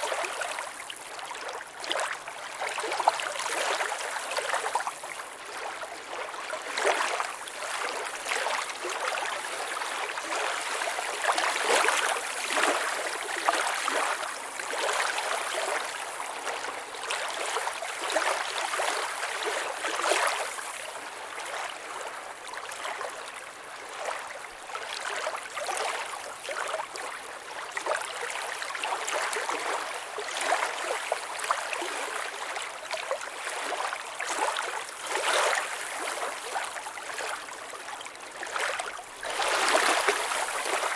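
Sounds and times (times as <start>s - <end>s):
water lapping at lake edge: 0.0s - 40.9s.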